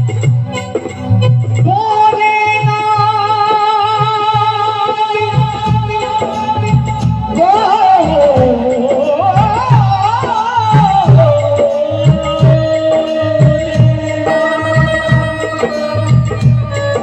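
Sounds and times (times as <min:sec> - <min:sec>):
devotional melody: 0:00.0 - 0:17.0
hand drum beat: 0:05.4 - 0:17.0.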